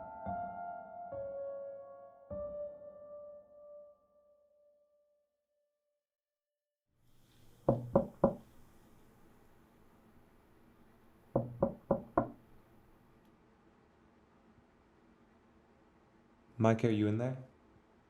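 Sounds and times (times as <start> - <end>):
knocking on a door: 7.7 - 8.4, 11.3 - 12.4.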